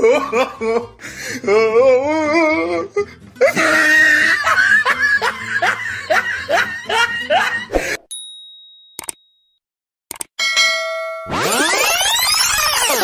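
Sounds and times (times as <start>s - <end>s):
person laughing: 0.0s - 8.0s.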